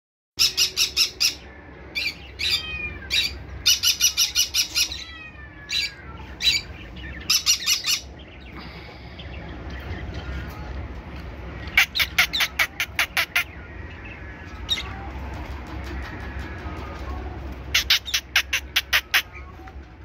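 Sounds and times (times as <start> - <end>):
parrot squawking: 0.4 - 8.1, 11.6 - 14.9, 17.7 - 19.6.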